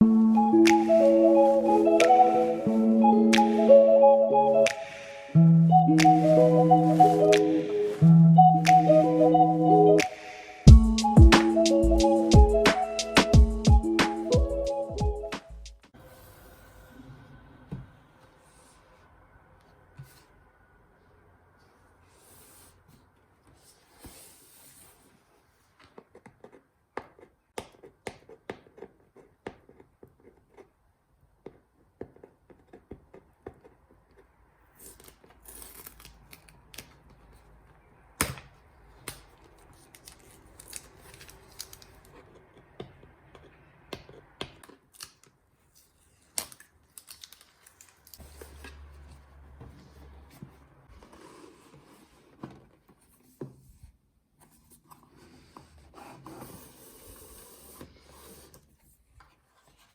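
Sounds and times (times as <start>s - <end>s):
cardboard and paper rustling: 38.9s - 42.4s, 44.9s - 59.9s.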